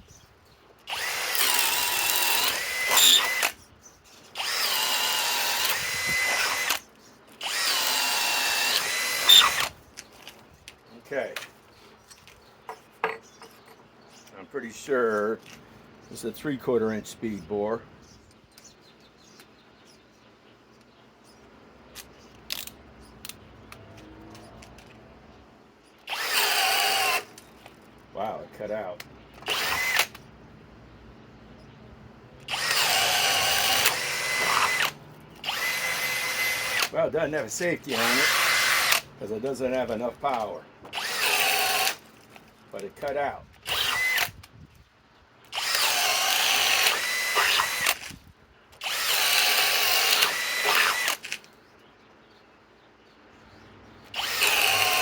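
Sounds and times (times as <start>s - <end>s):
hammer drill boring into wood: 0.9s - 3.6s, 4.4s - 6.8s, 7.4s - 9.8s, 26.0s - 27.3s, 29.4s - 30.2s, 32.4s - 36.9s, 37.8s - 39.1s, 40.9s - 42.1s, 43.6s - 44.4s, 45.5s - 48.2s, 48.8s - 51.4s, 54.1s - 55.0s.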